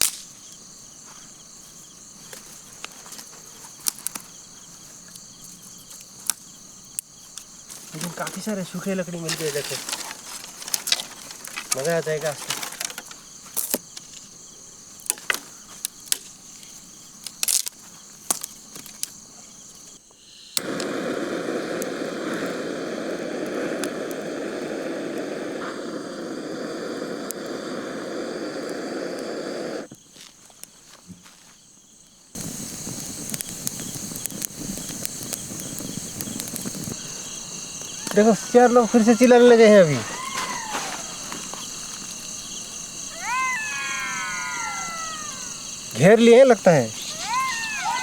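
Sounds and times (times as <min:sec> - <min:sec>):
dry firewood cracking: 0:00.0 - 0:20.0, 0:32.3 - 0:48.0
crickets trilling: 0:00.0 - 0:48.0.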